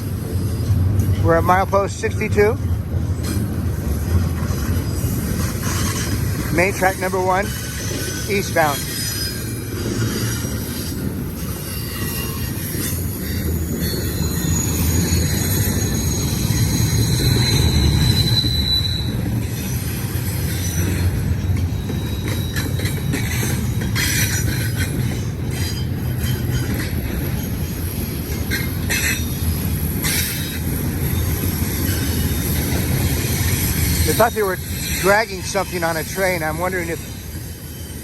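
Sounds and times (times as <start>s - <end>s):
freight train rumbling on rails: 0.0s - 38.0s
wheels clacking over rail joints: 0.0s - 38.0s
high flange squeal: 7.5s - 21.0s.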